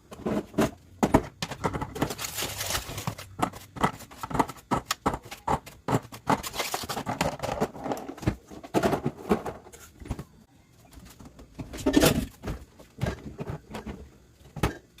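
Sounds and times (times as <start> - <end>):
rustling scrapes: 2.0 - 3.2
items being set down: 6.8 - 10.4.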